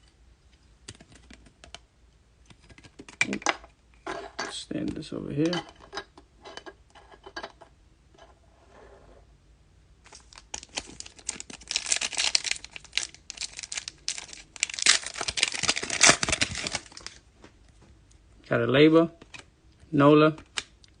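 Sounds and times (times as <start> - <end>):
wrapper tearing and crinkling: 10.0 - 17.2.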